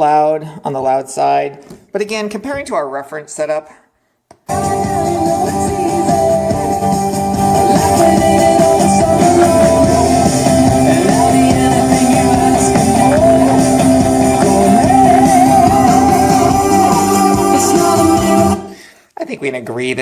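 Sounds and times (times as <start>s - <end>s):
rock music with singing: 4.5s - 18.8s.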